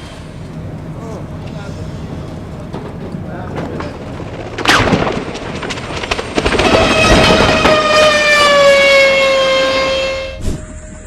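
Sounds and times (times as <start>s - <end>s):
clattering and knocking: 2.1s - 8.4s.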